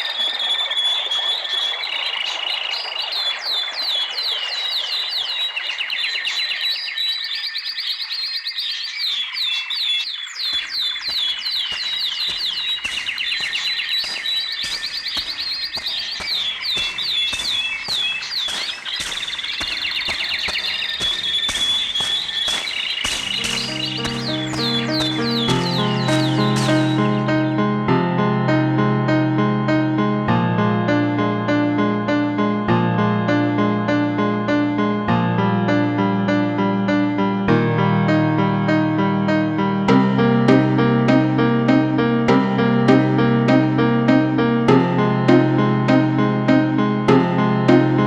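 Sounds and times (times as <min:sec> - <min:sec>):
birds chirping and trilling: 0:00.0 - 0:27.6.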